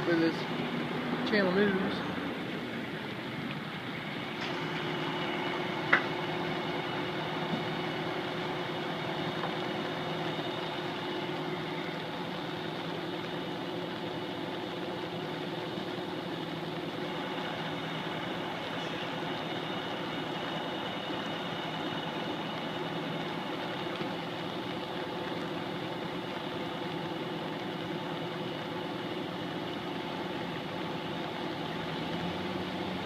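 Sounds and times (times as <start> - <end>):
diesel engines idling: 0.0 - 33.0
rain hiss: 0.0 - 33.0.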